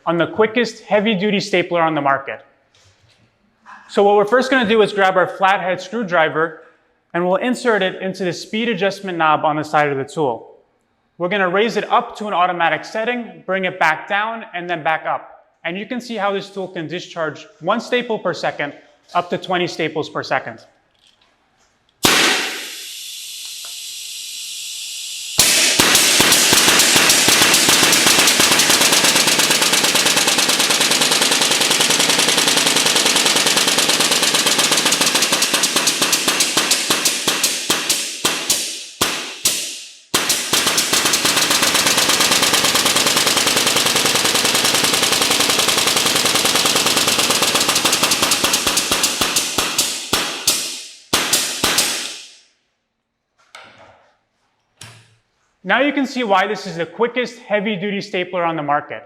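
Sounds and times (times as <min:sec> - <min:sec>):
pneumatic stapler firing: 0:22.0 - 0:52.4
compressed air hiss: 0:22.2 - 0:26.5.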